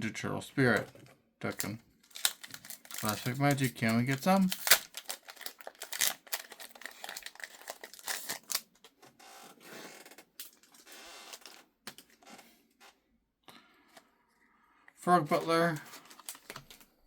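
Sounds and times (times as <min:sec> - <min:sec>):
trading cards rustling: 0:00.7 - 0:09.0, 0:15.3 - 0:17.0
foil wrapper crinkling: 0:01.6 - 0:08.9, 0:15.3 - 0:17.0.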